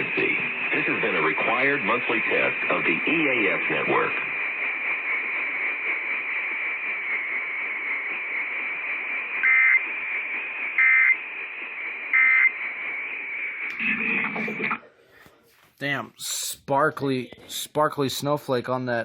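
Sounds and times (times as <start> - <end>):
radio hiss: 0.0 - 16.6.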